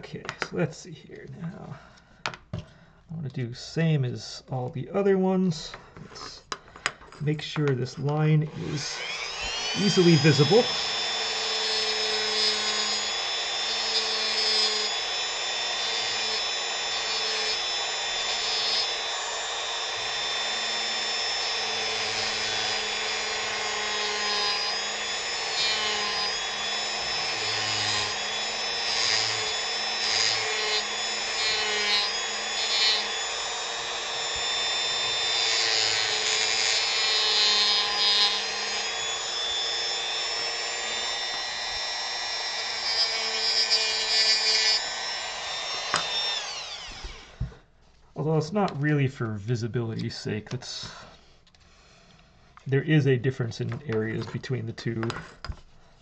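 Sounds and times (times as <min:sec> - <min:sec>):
rotary tool whining into wood: 0:07.9 - 0:47.8, 0:50.9 - 0:52.6.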